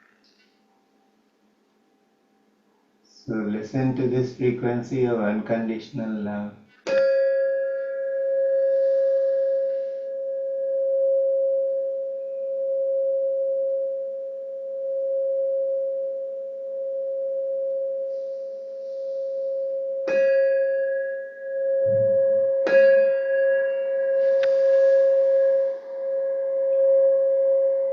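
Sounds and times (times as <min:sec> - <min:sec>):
singing bowl ringing: 0:06.9 - 0:27.9.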